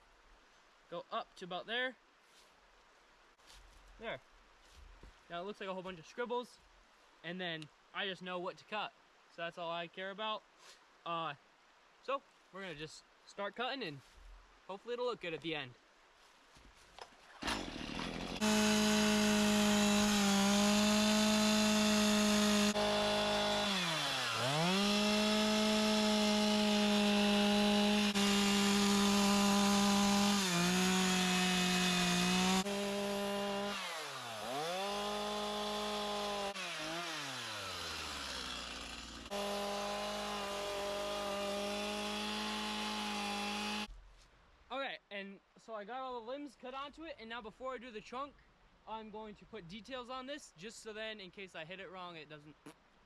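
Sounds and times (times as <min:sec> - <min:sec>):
chainsaw cutting wood: 0:17.3 - 0:43.9.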